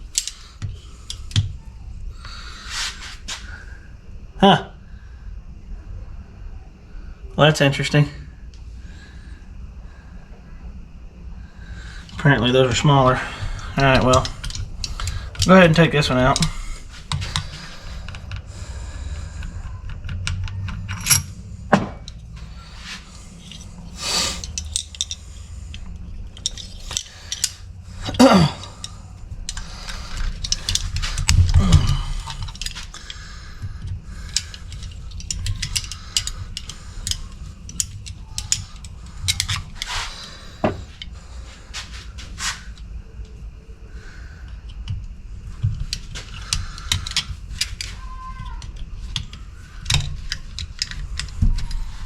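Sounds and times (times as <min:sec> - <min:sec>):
metal parts and tools clinking: 0:00.0 - 0:01.5, 0:13.6 - 0:18.4, 0:20.2 - 0:42.6, 0:45.6 - 0:52.0
low steady hum: 0:00.0 - 0:52.0.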